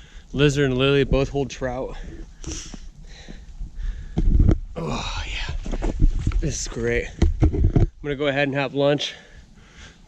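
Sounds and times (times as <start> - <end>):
person sniffing: 2.4 - 2.9.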